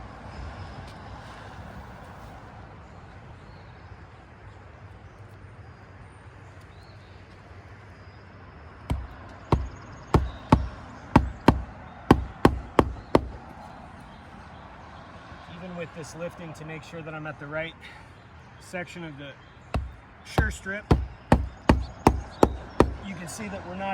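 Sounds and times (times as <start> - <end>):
hatchet driving nails into shingle: 8.9 - 13.5, 19.8 - 23.1.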